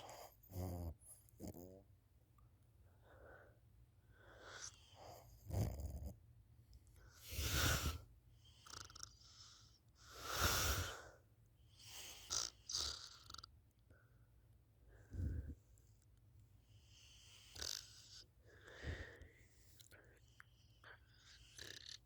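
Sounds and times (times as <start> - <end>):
person snoring: 7.2 - 8.0.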